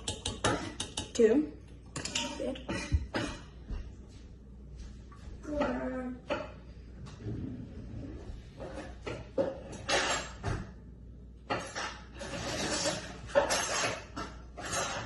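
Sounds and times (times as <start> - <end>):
utensil scraping bowl: 0.0 - 1.3, 11.5 - 15.0
utensils knocking against bowl: 0.0 - 3.5.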